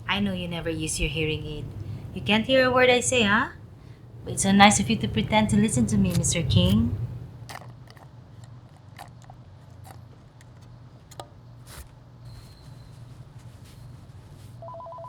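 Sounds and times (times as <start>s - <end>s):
steady low hum: 0.0s - 7.6s.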